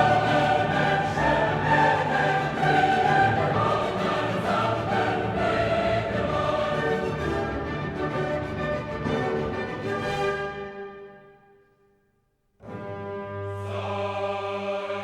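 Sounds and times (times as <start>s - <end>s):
choir singing sustained chords: 0.0s - 8.7s, 12.9s - 15.0s
orchestral backing: 0.0s - 11.6s, 12.6s - 14.7s.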